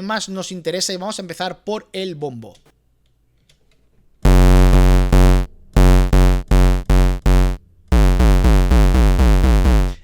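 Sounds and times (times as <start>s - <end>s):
low buzzing synth feedback tone: 4.3s - 10.0s.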